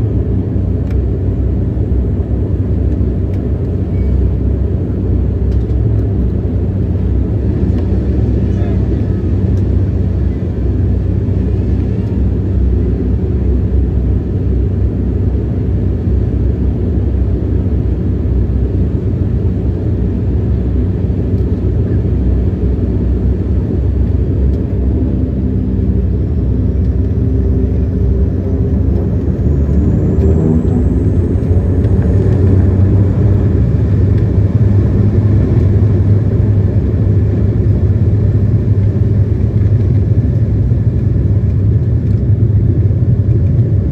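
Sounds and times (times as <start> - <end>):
airliner engines rumbling: 0.0 - 43.9
jet engine whine rising: 21.9 - 43.9.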